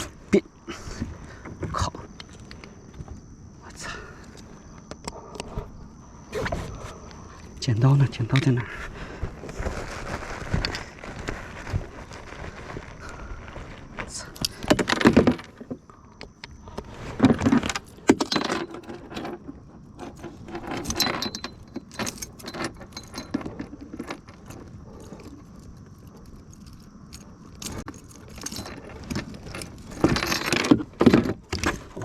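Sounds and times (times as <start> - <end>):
metal fishing tackle jingling: 20.8 - 23.8.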